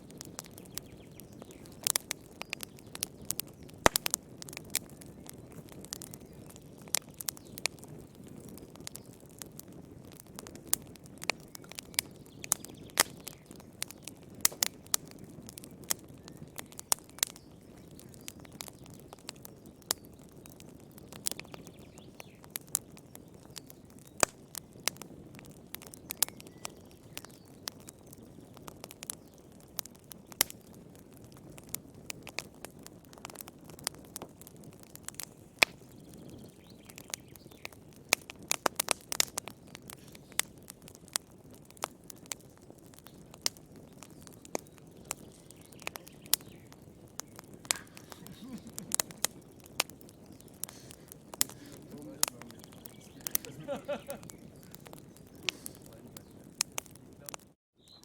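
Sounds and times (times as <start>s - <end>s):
wood fire popping and snapping: 0.0s - 58.0s
hiss of flames: 30.6s - 57.4s.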